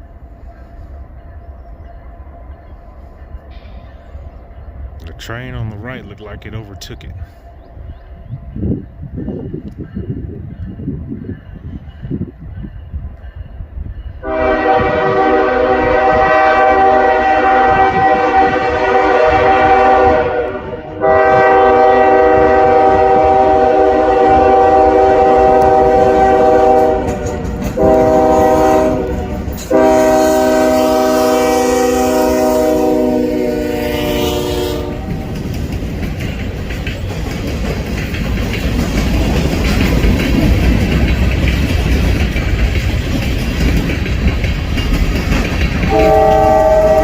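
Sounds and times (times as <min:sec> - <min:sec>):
moving train rumble: 0:00.0 - 0:47.0
train air horn blasts: 0:14.2 - 0:35.3, 0:45.9 - 0:47.0.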